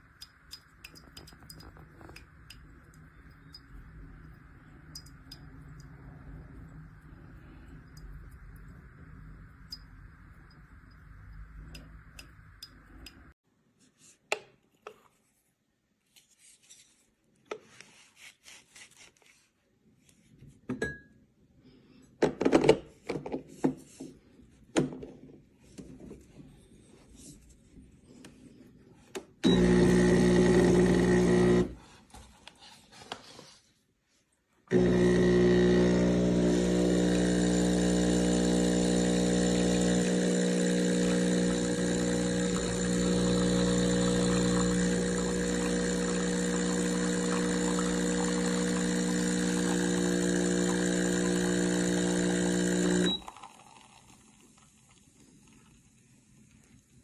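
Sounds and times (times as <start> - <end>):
espresso machine pump buzzing: 29.4 - 31.8, 34.7 - 54.1.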